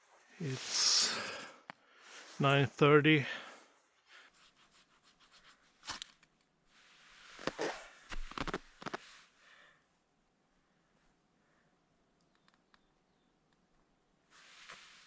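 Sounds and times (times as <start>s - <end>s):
faint clicks: 12.2s - 12.9s.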